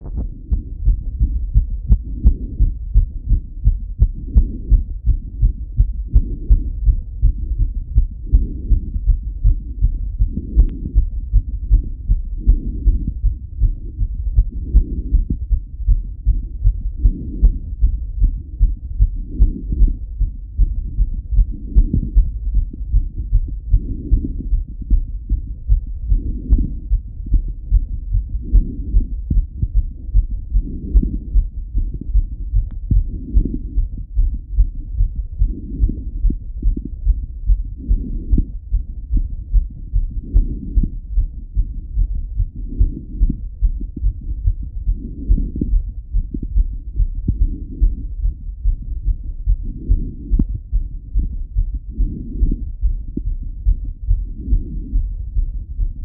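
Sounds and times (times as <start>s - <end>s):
fast heartbeat thuds: 0.0s - 56.0s.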